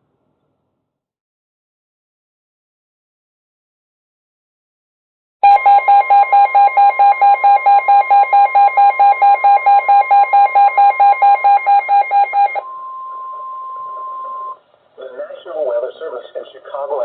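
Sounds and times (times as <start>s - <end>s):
electronic alarm beeping: 5.4s - 14.6s.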